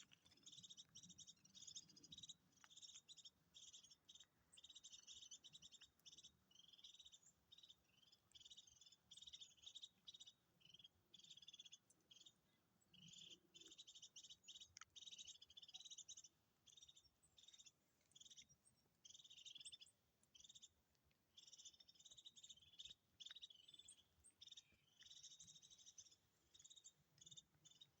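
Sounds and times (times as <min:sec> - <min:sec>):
bird twittering trills: 0:00.0 - 0:28.0.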